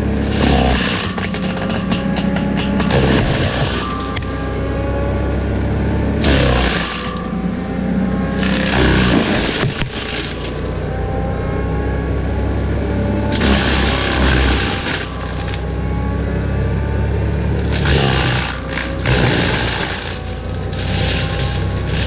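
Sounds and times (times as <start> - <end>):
brush and wood being shredded: 0.0 - 4.3, 6.2 - 10.8, 13.3 - 15.8, 17.4 - 22.0
forestry mulcher engine: 0.0 - 22.0.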